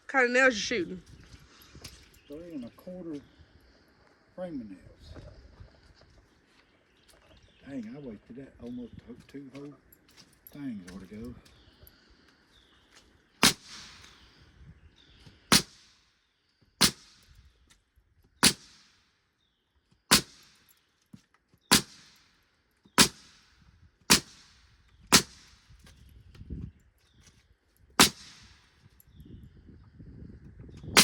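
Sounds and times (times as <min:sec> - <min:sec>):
nail gun firing: 0:13.4 - 0:14.2, 0:15.5 - 0:15.9, 0:16.8 - 0:17.3, 0:18.4 - 0:19.0, 0:20.1 - 0:20.6, 0:21.7 - 0:22.3, 0:23.0 - 0:23.5, 0:24.1 - 0:25.7, 0:28.0 - 0:28.6.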